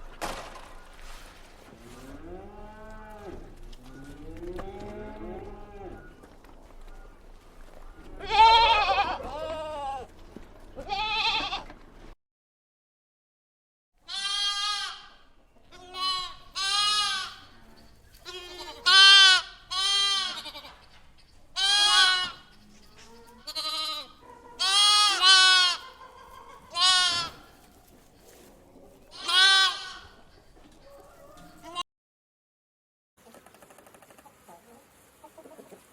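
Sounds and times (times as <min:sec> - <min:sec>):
farm animal bleating: 0:01.8 - 0:06.2, 0:08.0 - 0:10.2, 0:10.8 - 0:11.8, 0:14.0 - 0:27.8, 0:29.1 - 0:30.3, 0:31.0 - 0:31.8.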